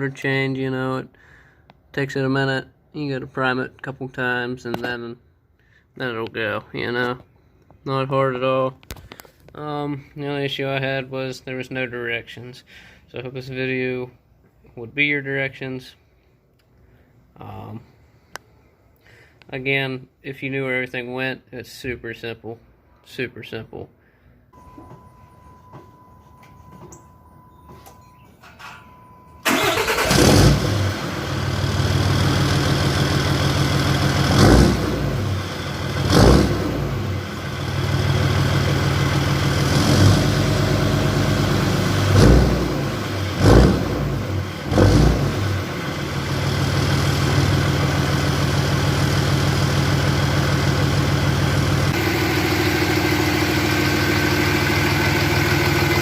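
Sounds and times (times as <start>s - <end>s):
diesel engine idling: 28.9s - 56.0s.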